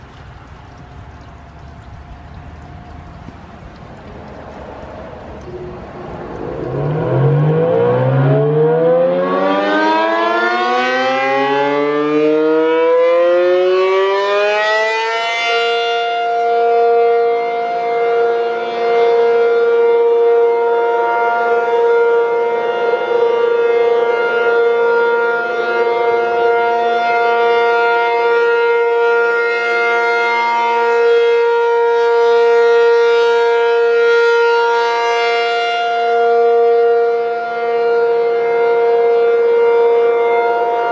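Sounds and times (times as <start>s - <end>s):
warning siren rising to steady tone: 0.9s - 40.9s.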